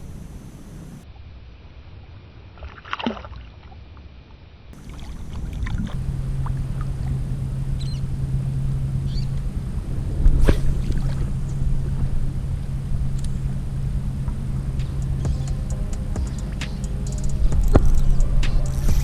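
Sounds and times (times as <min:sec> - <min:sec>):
boat motor humming: 0:04.8 - 0:19.0
faint high chirps: 0:12.7 - 0:19.0.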